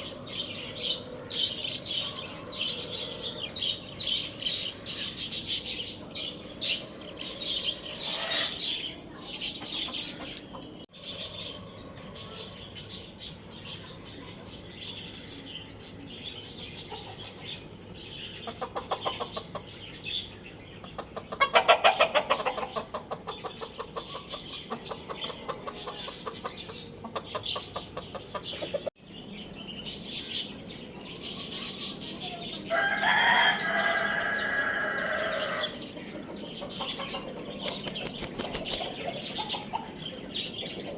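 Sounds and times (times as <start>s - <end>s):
chickens clucking: 0.0s - 14.5s, 16.6s - 29.0s, 31.2s - 40.9s
birds chattering: 0.0s - 40.9s
rooster crowing: 32.7s - 35.8s.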